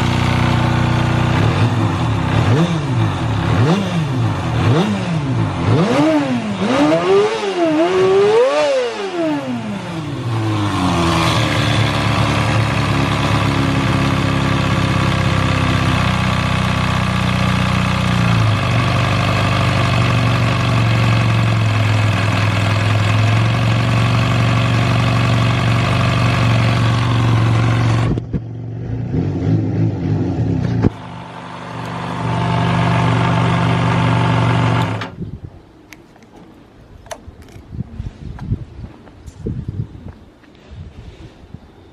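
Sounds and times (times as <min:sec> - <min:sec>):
motorcycle engine idling: 0:00.0 - 0:06.8, 0:09.2 - 0:28.7, 0:30.9 - 0:35.0
motorcycle engine revving: 0:00.0 - 0:35.2.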